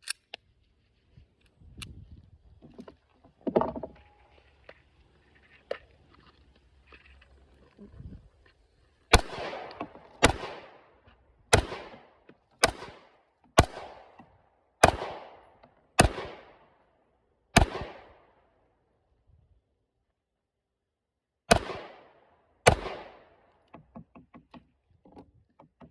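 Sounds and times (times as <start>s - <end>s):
pistol shots with echo: 9.1s - 10.9s, 11.5s - 14.1s, 14.8s - 16.7s, 17.6s - 18.3s, 21.5s - 23.4s.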